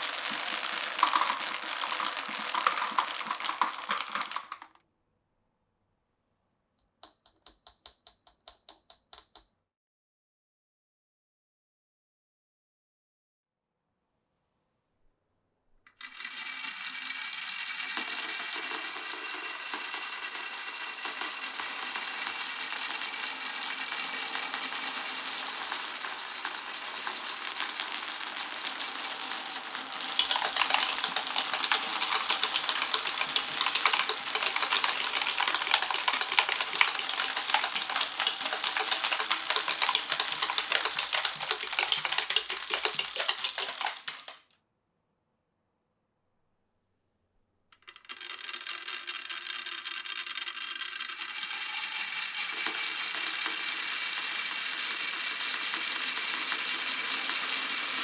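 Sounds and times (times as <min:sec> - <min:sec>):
marbles clattering down marble run: 0:00.0 - 0:04.8, 0:15.9 - 0:44.4, 0:47.8 - 0:58.0.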